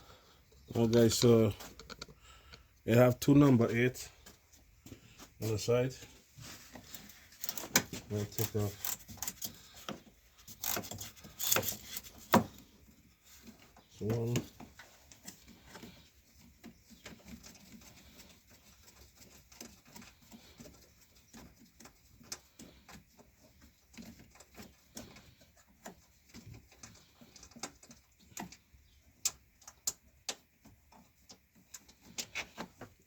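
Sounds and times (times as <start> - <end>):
hand ratchet clicking: 10.5 - 12.2.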